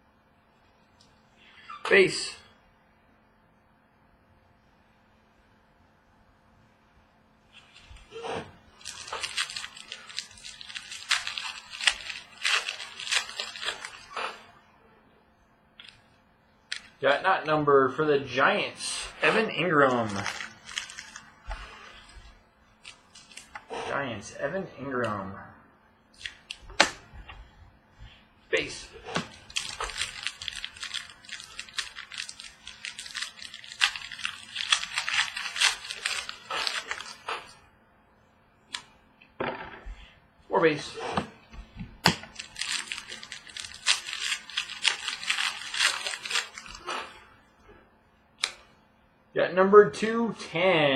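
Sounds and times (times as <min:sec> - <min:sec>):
wrapper crinkling: 0:07.5 - 0:14.2, 0:19.2 - 0:23.7, 0:28.6 - 0:37.5, 0:42.0 - 0:47.0.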